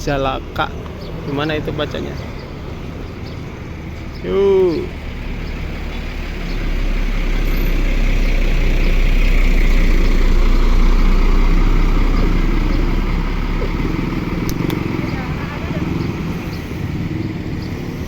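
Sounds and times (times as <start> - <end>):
bus driving past: 0.0 - 18.0.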